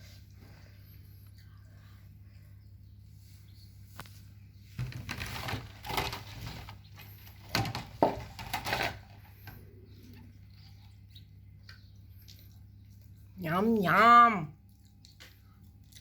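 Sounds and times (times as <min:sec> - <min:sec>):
steady low hum: 0:00.0 - 0:16.0
rustling and light clattering: 0:03.1 - 0:10.9.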